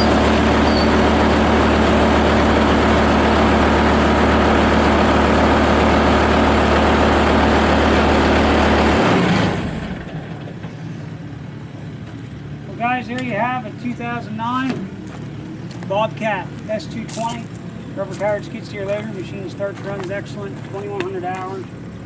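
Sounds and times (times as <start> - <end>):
diesel engine running: 0.0 - 22.0.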